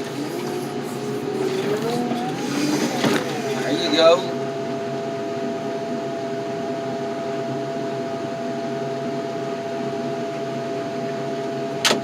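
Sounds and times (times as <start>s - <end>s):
crushing machine humming: 0.0s - 4.6s
constant machine whine: 0.0s - 12.0s.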